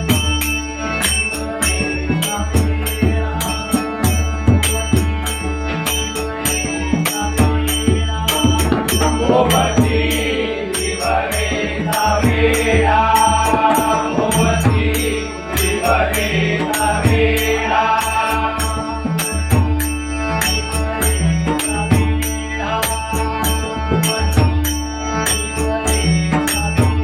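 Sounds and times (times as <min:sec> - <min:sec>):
sustained drone: 0:00.0 - 0:26.9
man singing: 0:01.4 - 0:05.5, 0:06.5 - 0:19.7, 0:20.6 - 0:24.7.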